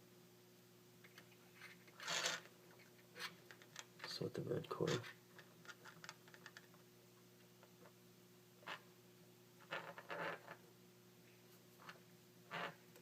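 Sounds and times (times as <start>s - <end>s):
low steady hum: 0.0s - 13.0s
cable wires rustling and clicking: 1.0s - 6.8s.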